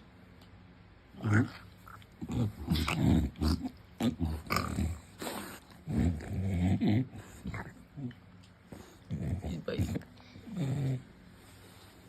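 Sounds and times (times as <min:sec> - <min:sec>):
dog grunting and snorting: 0:01.1 - 0:08.2, 0:08.8 - 0:11.2.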